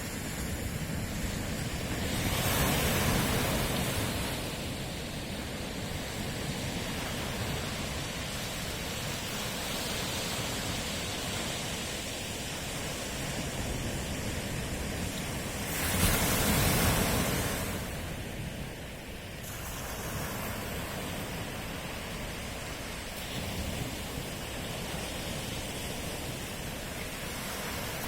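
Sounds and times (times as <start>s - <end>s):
waves washing on shore: 0.0s - 28.0s.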